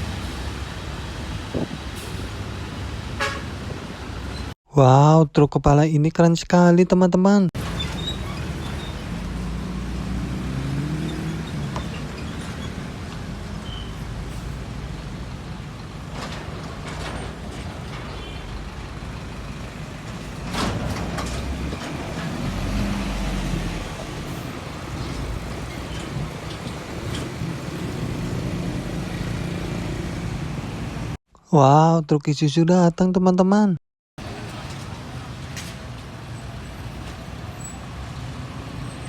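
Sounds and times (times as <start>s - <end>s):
heavy trucks passing: 0.0s - 4.6s, 7.6s - 31.2s, 34.2s - 39.0s
diesel engine hum: 7.6s - 31.2s.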